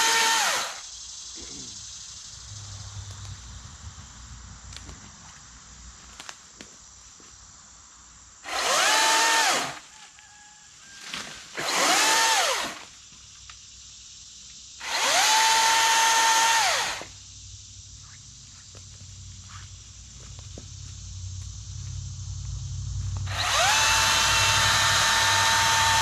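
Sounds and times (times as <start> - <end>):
battery chainsaw whining: 0.0 - 0.8, 8.4 - 9.8, 11.5 - 12.8, 14.8 - 17.1, 23.2 - 26.0.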